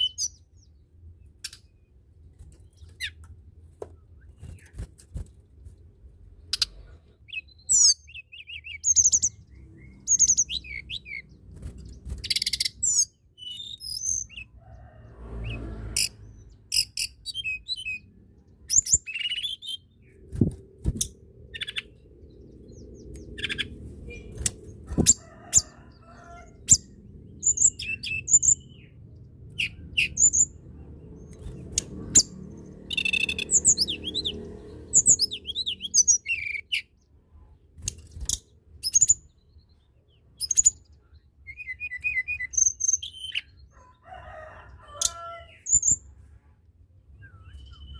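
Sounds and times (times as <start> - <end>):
bird chirping and trilling: 0.0 - 0.8, 6.5 - 14.6, 15.5 - 37.0, 37.9 - 43.7, 45.0 - 46.1, 47.1 - 47.9
faint low rumble: 19.9 - 35.9.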